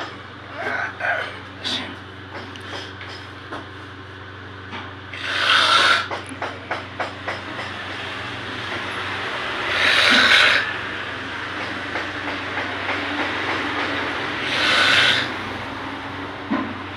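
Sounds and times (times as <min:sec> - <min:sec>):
hissing breaths: 0:00.5 - 0:02.0, 0:05.1 - 0:06.2, 0:09.5 - 0:10.8, 0:14.3 - 0:15.5
person snoring heavily: 0:00.5 - 0:02.0, 0:05.1 - 0:06.1, 0:09.6 - 0:10.8, 0:14.4 - 0:15.4.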